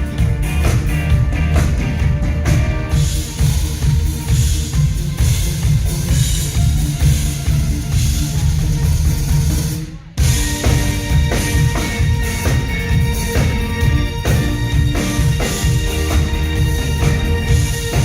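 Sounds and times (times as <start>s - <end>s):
band drums and bass: 0.0s - 18.0s
held keyboard or guitar notes: 10.2s - 18.0s.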